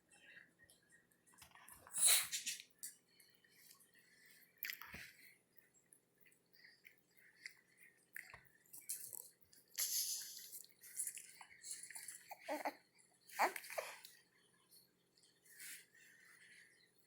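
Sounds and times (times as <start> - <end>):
small short sneezes: 1.9 - 2.6.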